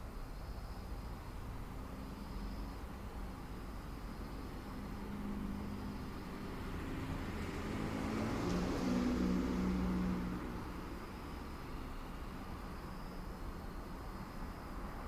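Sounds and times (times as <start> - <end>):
car passing: 1.4 - 15.0.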